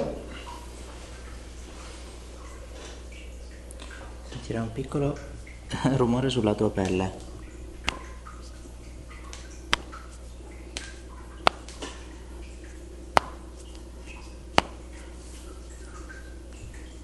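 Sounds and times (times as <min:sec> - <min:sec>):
connective tissue snapping: 0:09.3 - 0:12.0, 0:14.5 - 0:14.9.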